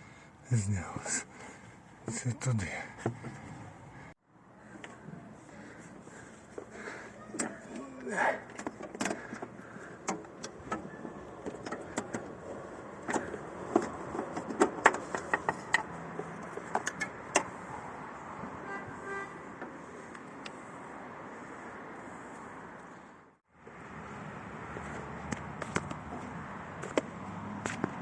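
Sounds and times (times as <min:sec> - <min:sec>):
metallic clicks and knocks of tools: 0:13.0 - 0:17.5.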